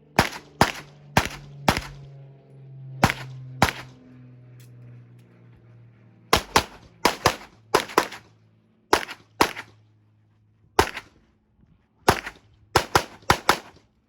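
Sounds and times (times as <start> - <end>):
pistol shots: 0.2 - 2.1, 3.0 - 4.0, 6.3 - 8.3, 8.9 - 9.8, 10.8 - 11.2, 12.1 - 13.8.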